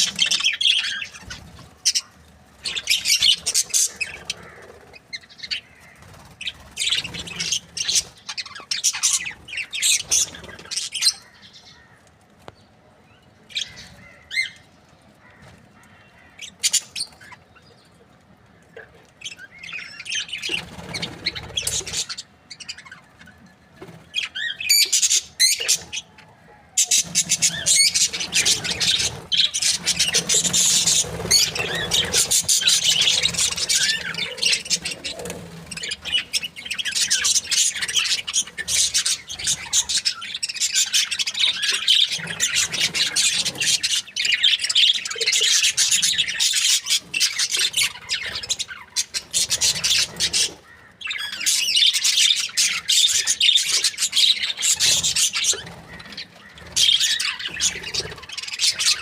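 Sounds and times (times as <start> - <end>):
budgerigars chirping: 0.0 - 11.5, 26.8 - 59.0.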